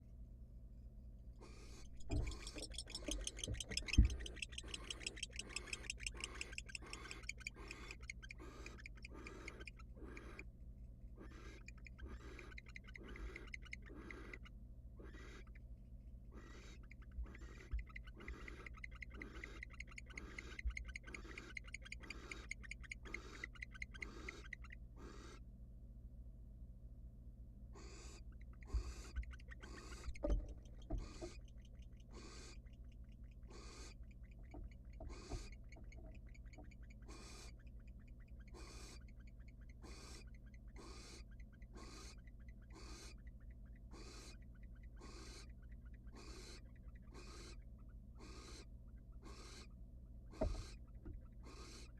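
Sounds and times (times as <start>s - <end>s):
barn owl hissing screeches: 1.4s - 10.5s, 11.2s - 15.6s, 16.3s - 25.4s, 27.8s - 30.3s, 32.1s - 32.7s, 33.4s - 35.8s, 37.0s - 37.7s, 38.4s - 39.2s, 39.8s - 43.2s, 43.9s - 45.5s, 46.1s - 47.6s, 48.2s - 49.7s, 50.3s - 51.9s.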